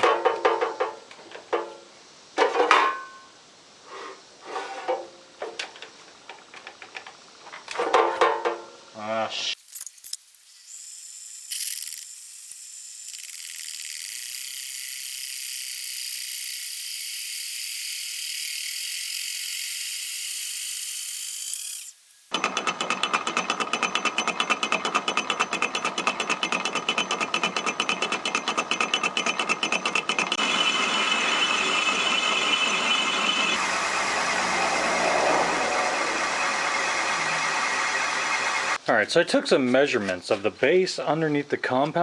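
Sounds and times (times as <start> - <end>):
power saw cutting steel: 9.5 - 23.0, 30.4 - 38.8.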